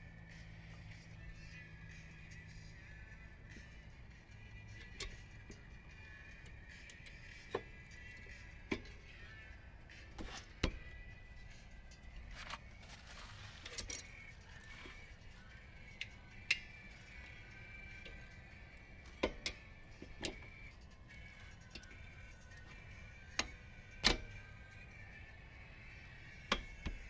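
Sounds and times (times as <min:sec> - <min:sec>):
metal tools clicking and clinking: 0:13.6 - 0:15.2.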